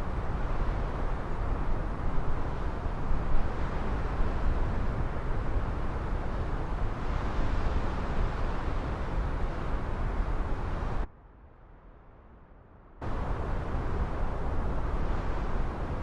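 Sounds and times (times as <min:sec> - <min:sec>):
wind buffeting microphone: 0:13.0 - 0:16.0.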